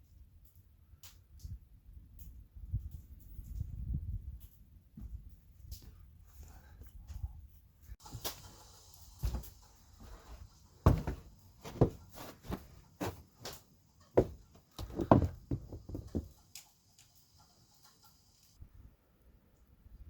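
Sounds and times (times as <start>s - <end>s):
knocks and thumps: 10.8s - 13.6s, 14.2s - 16.4s.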